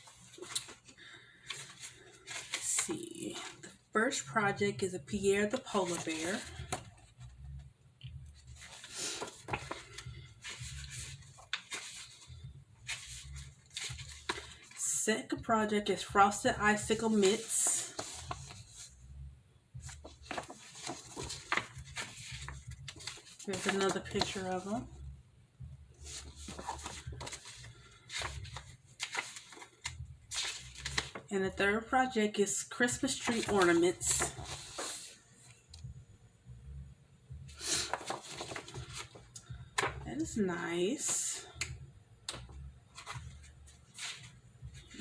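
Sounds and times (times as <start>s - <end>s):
paper pages rustling: 0.0s - 3.8s, 5.4s - 7.3s, 8.4s - 14.9s, 16.7s - 18.9s, 19.8s - 24.9s, 26.0s - 31.3s, 32.8s - 35.6s, 37.6s - 40.0s, 42.3s - 45.0s
low room hum: 0.0s - 45.0s.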